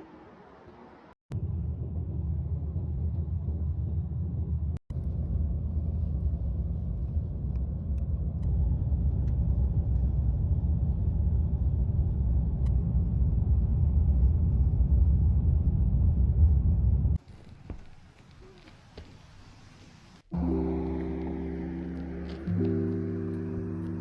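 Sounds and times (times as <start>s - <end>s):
moving vehicle rumble: 0.4s - 19.3s.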